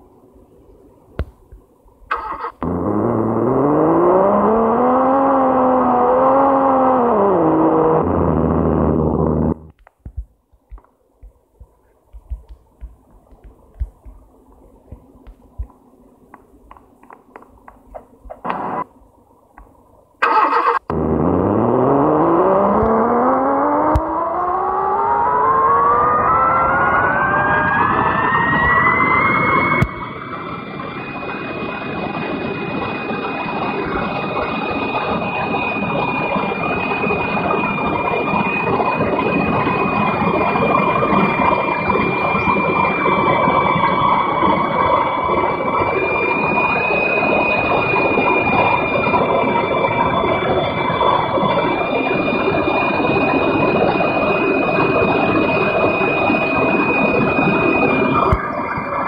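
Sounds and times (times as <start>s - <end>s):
rushing noise: 17.9s - 18.9s, 20.2s - 59.0s
electric motor whining: 20.4s - 28.9s.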